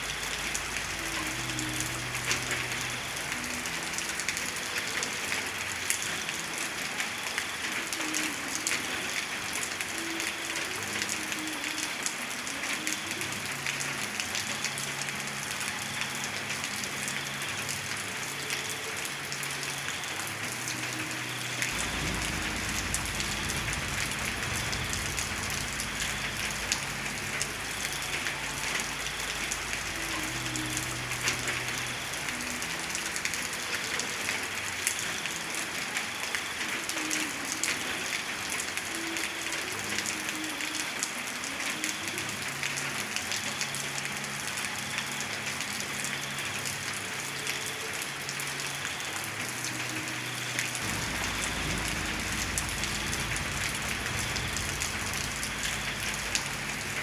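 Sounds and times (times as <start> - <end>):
heavy rain falling: 0.0 - 57.0
low rumble: 21.8 - 27.4, 50.9 - 56.6.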